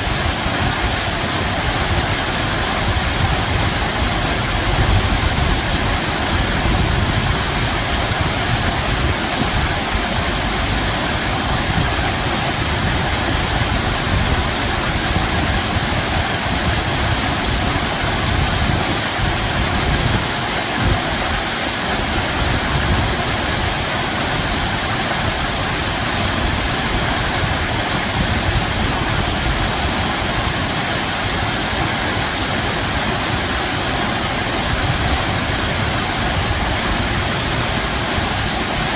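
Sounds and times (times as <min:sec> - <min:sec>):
water rushing: 0:00.0 - 0:38.9
low rumble: 0:08.8 - 0:12.0.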